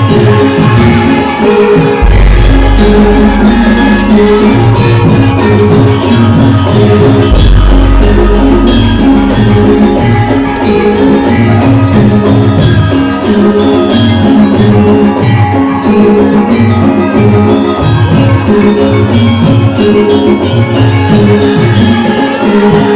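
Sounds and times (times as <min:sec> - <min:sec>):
hand drum strokes: 0:00.0 - 0:22.9
ringing pitched metal notes: 0:00.0 - 0:22.9
deep low note: 0:02.0 - 0:12.8.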